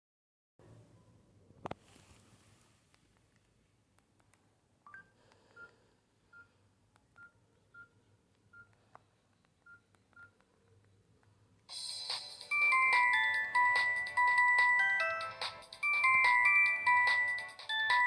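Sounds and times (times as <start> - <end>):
phone keypad beeps: 4.8 - 6.6, 7.2 - 8.8, 9.6 - 10.4
chiming ringtone melody: 11.7 - 18.0.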